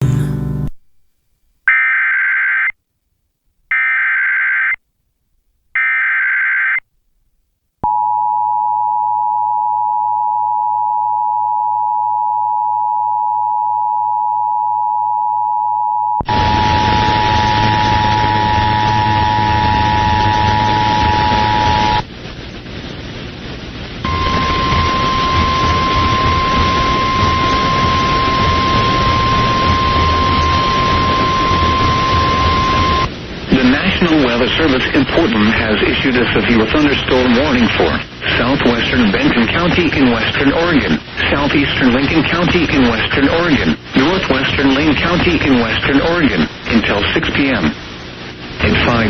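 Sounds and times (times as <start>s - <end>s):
two-tone attention signal: 7.8s - 22.0s, 24.1s - 33.1s
static hiss: 16.2s - 49.0s
digital data bursts: 16.3s - 22.0s, 24.0s - 47.8s.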